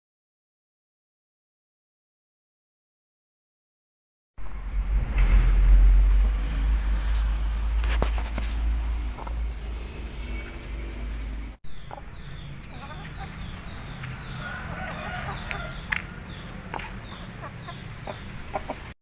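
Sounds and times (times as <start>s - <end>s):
low rumble: 4.4s - 14.5s
chickens clucking: 9.1s - 9.5s, 11.7s - 19.0s.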